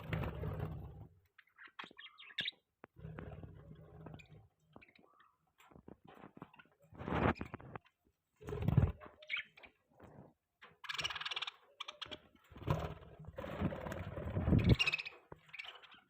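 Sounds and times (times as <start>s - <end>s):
budgie chattering and chirping: 8.7s - 9.8s, 10.8s - 12.4s, 14.4s - 16.0s.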